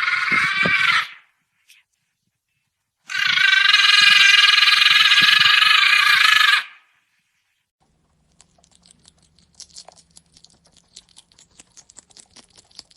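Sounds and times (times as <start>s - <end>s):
loud animal call: 0.0s - 1.3s, 3.1s - 6.9s.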